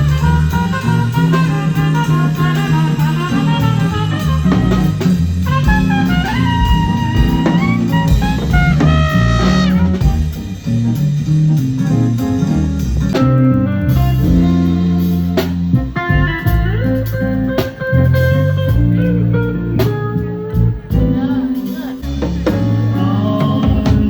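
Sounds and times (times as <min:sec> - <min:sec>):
melodic lead line sliding: 0:00.0 - 0:23.7
bass: 0:00.0 - 0:24.0
drum kit: 0:00.0 - 0:24.0.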